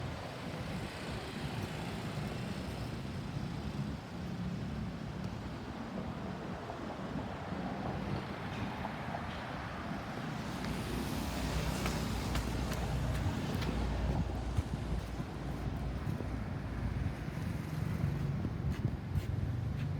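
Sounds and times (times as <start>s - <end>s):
vehicle engines passing: 10.1s - 19.9s.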